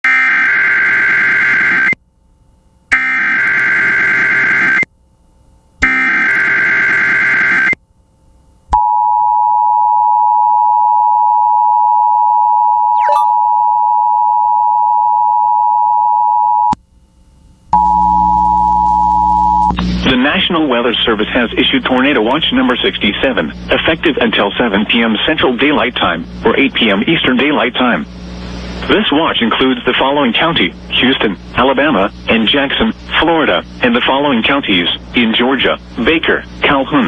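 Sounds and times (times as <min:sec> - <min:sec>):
loud two-tone alert signal: 0:13.0 - 0:13.5
warbling data screech: 0:13.0 - 0:13.5.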